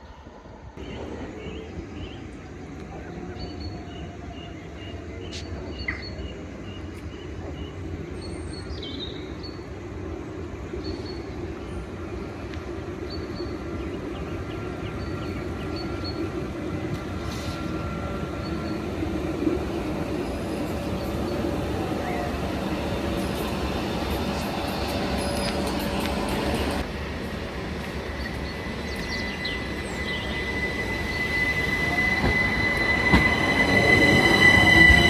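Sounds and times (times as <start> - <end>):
electric train running: 14.0 - 35.0.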